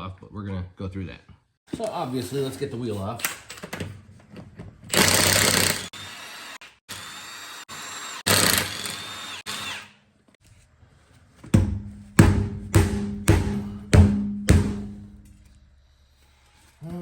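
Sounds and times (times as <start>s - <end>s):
impact wrench whirring whine: 4.9s - 10.0s
music with drumbeat: 11.6s - 15.3s
impact wrench hammering: 11.6s - 15.6s.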